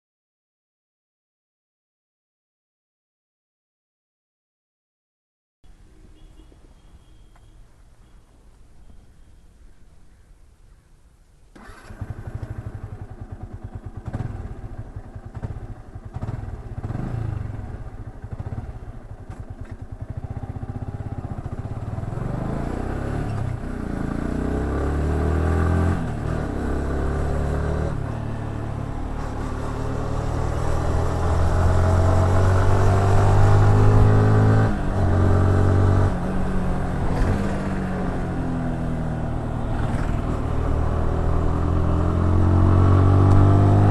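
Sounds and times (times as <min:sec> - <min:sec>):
motorcycle engine revving: 0:11.5 - 0:43.9.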